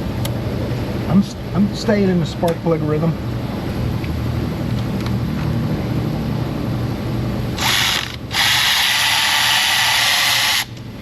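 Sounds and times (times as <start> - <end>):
low shop hum: 0.0 - 11.0
power ratchet running: 7.6 - 10.8.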